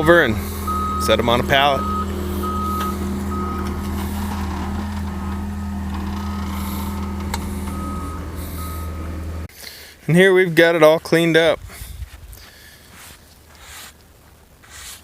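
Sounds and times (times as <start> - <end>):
machine engine running: 0.0 - 9.5
reversing alarm beeping: 0.1 - 9.5.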